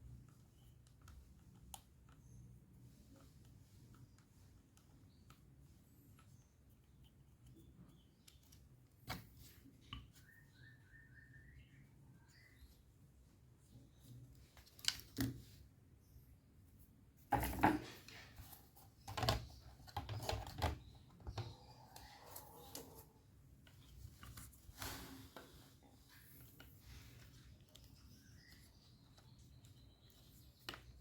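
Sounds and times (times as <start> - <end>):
clicks and taps of hard plastic: 19.0 - 22.1.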